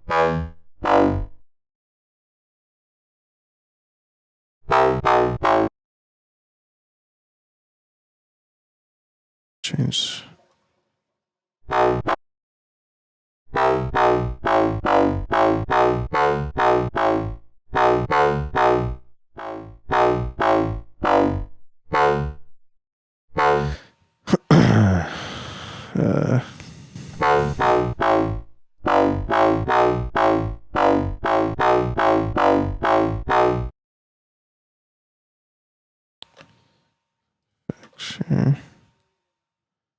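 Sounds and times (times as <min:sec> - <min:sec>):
synthesizer bass repeated notes: 0:00.0 - 0:01.4, 0:04.7 - 0:05.7, 0:11.7 - 0:12.2, 0:13.5 - 0:22.6, 0:23.4 - 0:24.4, 0:27.0 - 0:33.7
noisy held synth sweep: 0:27.1 - 0:33.7.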